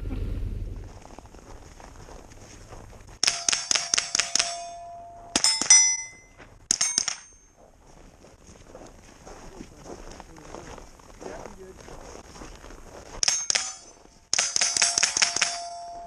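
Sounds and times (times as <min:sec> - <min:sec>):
bullets ringing on steel targets: 0:03.2 - 0:07.6, 0:13.2 - 0:16.0
rapid rifle fire: 0:13.2 - 0:15.8.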